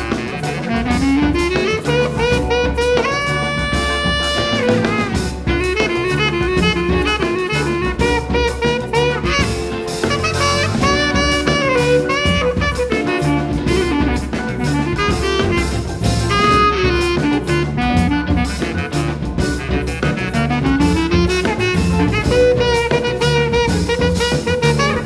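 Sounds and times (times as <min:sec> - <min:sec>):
drum kit swing beat: 0:00.0 - 0:25.0
horn melody: 0:00.0 - 0:25.0
walking bass line: 0:00.0 - 0:25.0.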